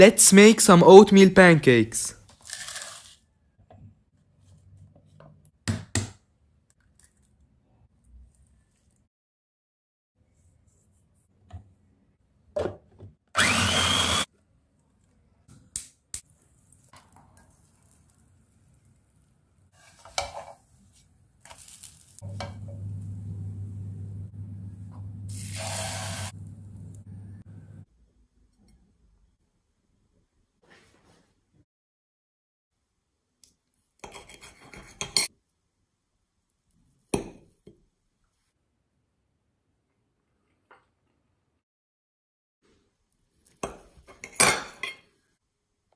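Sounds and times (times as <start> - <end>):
blender motor whine: 13.4 - 14.3.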